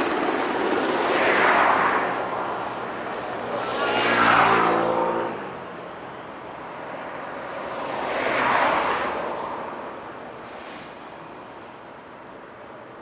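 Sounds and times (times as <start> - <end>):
vehicle passing: 0.7 - 10.2.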